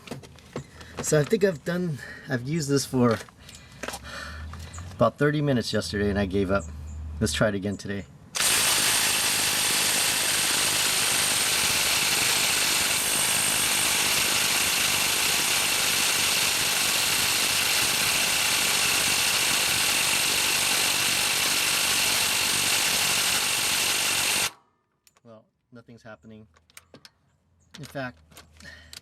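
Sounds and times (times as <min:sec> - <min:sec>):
impact wrench hammering on bolt: 0:08.4 - 0:24.6.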